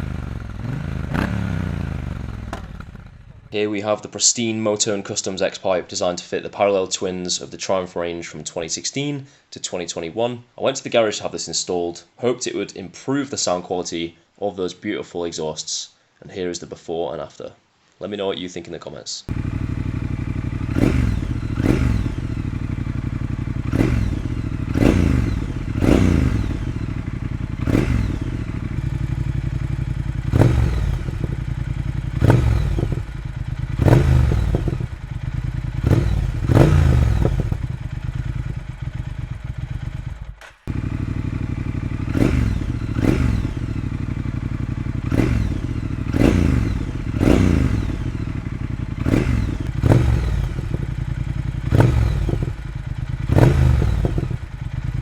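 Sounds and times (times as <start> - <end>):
motorcycle engine revving: 0.0 - 3.6, 19.3 - 55.0
exhaust burbling: 19.3 - 38.4, 40.7 - 50.9, 51.6 - 52.6, 53.2 - 54.5.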